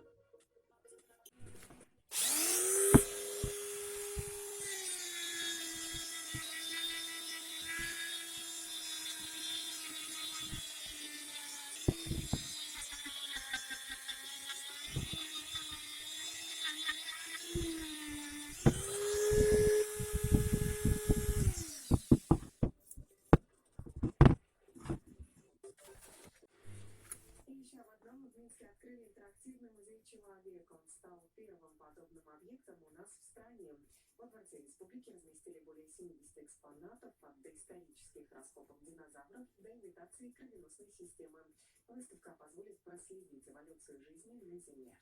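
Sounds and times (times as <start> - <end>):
electric power tool motor: 1.4 - 22.7
knocks and clatters: 23.8 - 25.1.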